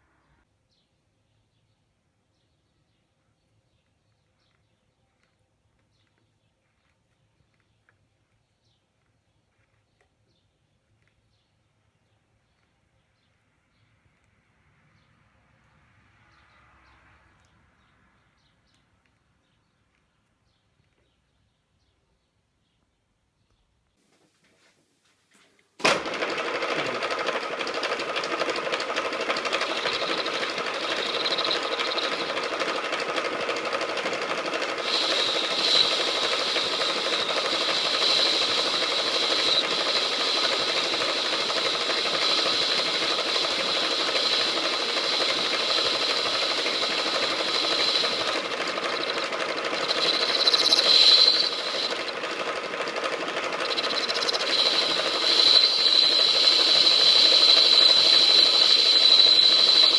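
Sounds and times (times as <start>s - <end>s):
high machine whine: 25.8s - 59.9s
metal lathe humming: 25.8s - 59.9s.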